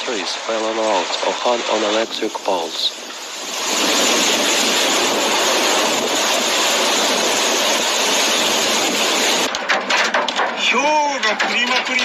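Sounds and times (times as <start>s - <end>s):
heavy downpour hissing: 0.0s - 9.5s.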